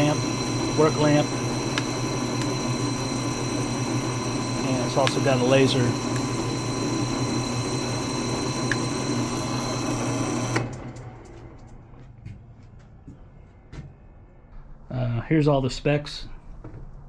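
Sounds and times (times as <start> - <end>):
drill press humming and whining: 0.0 - 12.0.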